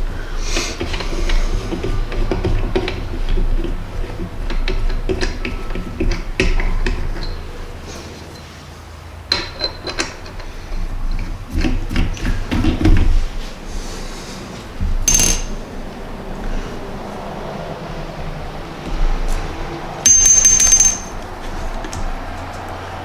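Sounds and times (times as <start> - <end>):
metal parts clattering on workbench: 15.0 - 15.6, 20.1 - 21.2.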